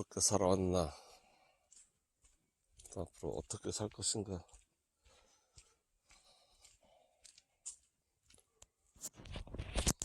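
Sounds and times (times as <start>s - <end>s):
soft ticks and scuffs: 0.4s - 10.0s.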